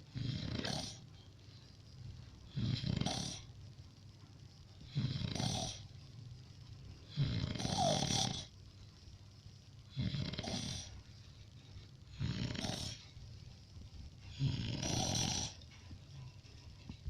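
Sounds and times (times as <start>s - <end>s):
person snoring: 2.5s - 3.5s, 7.1s - 8.5s, 9.9s - 11.0s, 12.1s - 13.0s, 14.3s - 15.6s.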